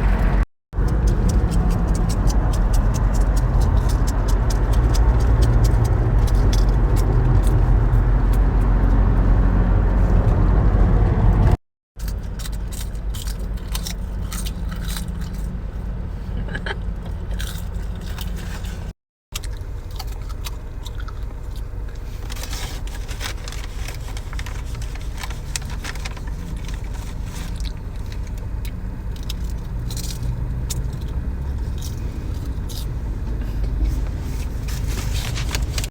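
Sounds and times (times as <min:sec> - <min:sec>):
steady low rumble: 0:00.0 - 0:11.6
crunchy snack chewing: 0:01.0 - 0:07.6, 0:12.0 - 0:15.6, 0:19.4 - 0:22.8.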